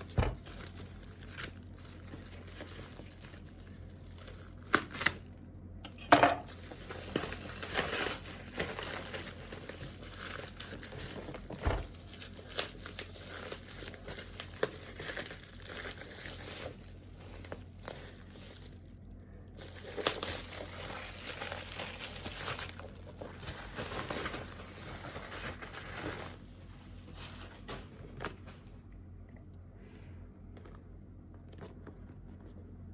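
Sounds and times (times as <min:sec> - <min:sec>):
packaging crinkling and rustling: 0:00.0 - 0:05.8, 0:06.4 - 0:28.9
steady low hum: 0:16.3 - 0:32.9.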